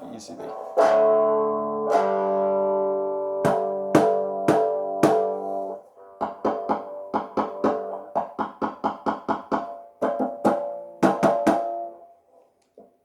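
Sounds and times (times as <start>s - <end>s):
strummed resonator guitar chords: 0.4s - 8.8s
percussive taps on guitar body: 3.4s - 5.4s, 6.2s - 11.8s.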